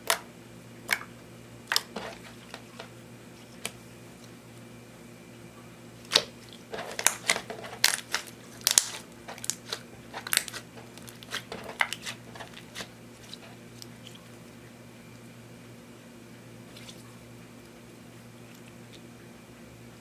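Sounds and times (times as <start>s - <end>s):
slime crackling and popping: 6.1s - 13.9s.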